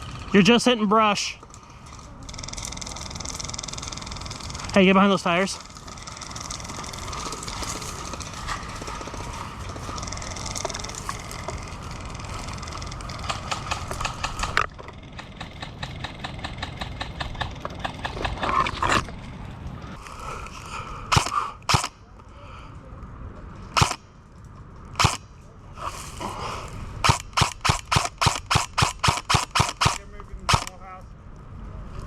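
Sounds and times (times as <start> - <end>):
quick irregular ticks: 1.8 - 18.9, 27.0 - 30.8
footsteps: 5.4 - 19.4.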